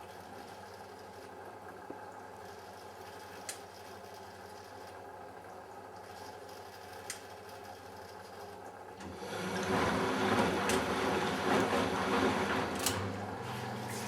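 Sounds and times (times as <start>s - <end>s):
washing machine hum: 0.0s - 14.0s
water rushing in washing machine: 0.0s - 14.0s
washing machine clicks: 9.0s - 13.2s.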